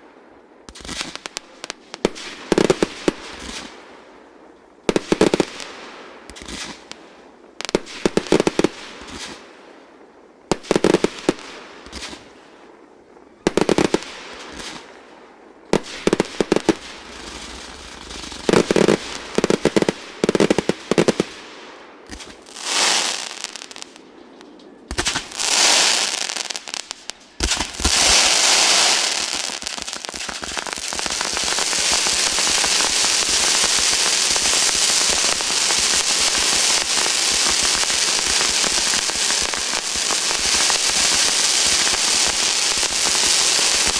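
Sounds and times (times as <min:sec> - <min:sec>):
dense firework crackle: 0:00.6 - 0:04.1, 0:04.8 - 0:09.6, 0:10.4 - 0:12.6, 0:13.2 - 0:24.0, 0:24.9 - 0:43.9
fireworks bangs: 0:00.7 - 0:03.8, 0:13.4 - 0:15.0, 0:15.7 - 0:43.9.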